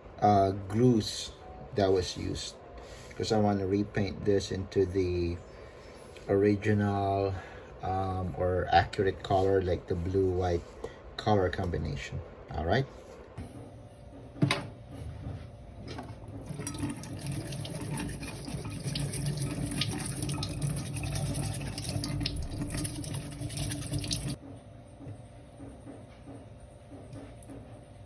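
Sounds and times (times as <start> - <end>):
water running from a tap: 16.4 - 24.4.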